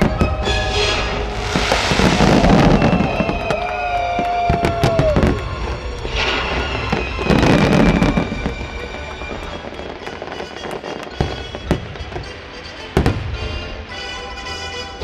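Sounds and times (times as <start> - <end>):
held musical tone: 0.0 - 4.3
fireworks bangs and crackle: 0.0 - 15.0
music soundtrack: 0.0 - 15.0.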